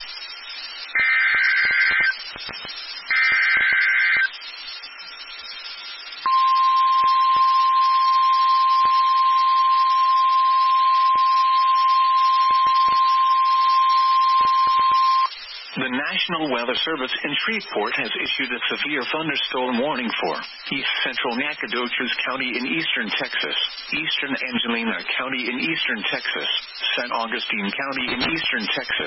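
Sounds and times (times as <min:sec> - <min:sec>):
radio hiss with static clicks: 0:00.0 - 0:06.3, 0:12.4 - 0:13.2, 0:14.2 - 0:29.0
steady warning alarm tone: 0:06.2 - 0:15.3.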